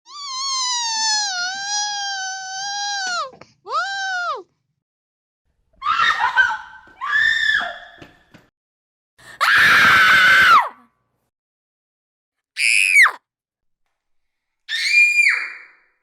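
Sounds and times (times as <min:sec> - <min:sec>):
woman screaming in fear: 0:09.4 - 0:10.8.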